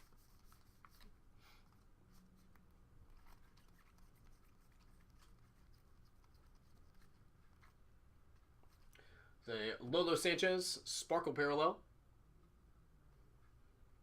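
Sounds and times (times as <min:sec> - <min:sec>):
low room hum: 0:00.0 - 0:14.0.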